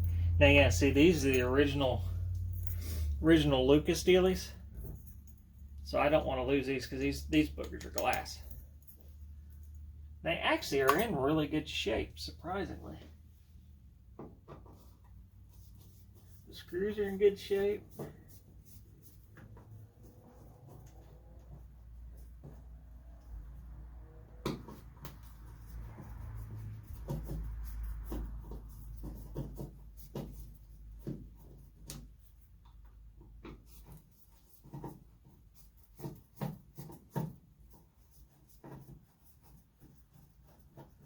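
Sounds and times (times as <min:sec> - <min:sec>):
low steady hum: 0:00.0 - 0:24.0
small parts clicking and tapping: 0:07.6 - 0:09.8
rubbing: 0:24.6 - 0:41.0.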